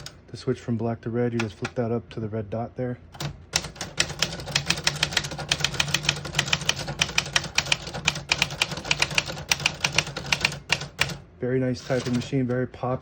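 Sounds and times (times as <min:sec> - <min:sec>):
manual typewriter typing: 0:03.2 - 0:11.2, 0:11.8 - 0:12.4.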